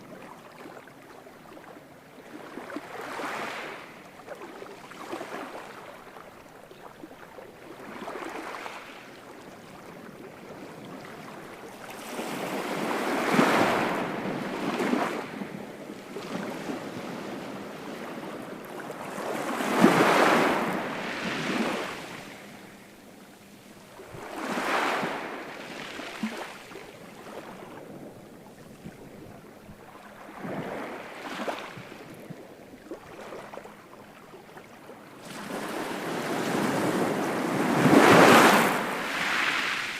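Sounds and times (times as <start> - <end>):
ocean waves breaking: 11.8 - 29.0, 29.7 - 32.2, 35.2 - 39.9.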